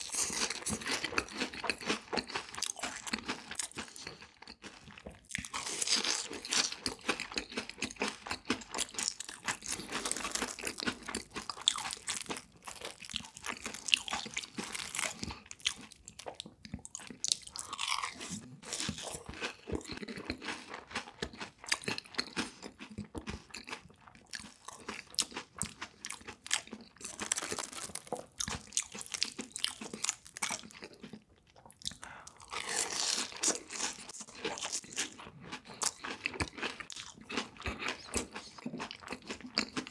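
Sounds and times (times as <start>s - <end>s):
crunchy food chewing: 0.0s - 39.9s.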